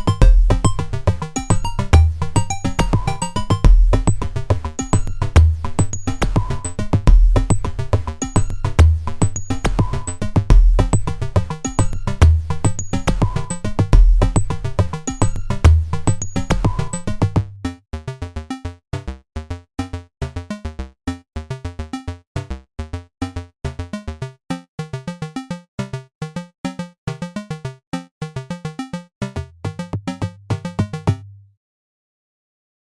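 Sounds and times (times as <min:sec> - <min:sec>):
synthesizer music: 0:00.0 - 0:17.4.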